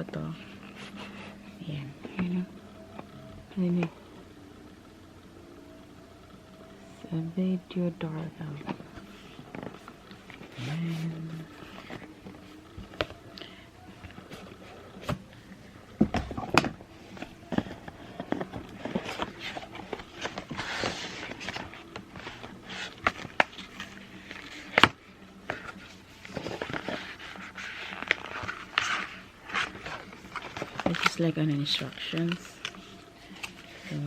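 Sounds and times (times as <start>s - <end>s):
packaging rustling: 8.0s - 34.0s.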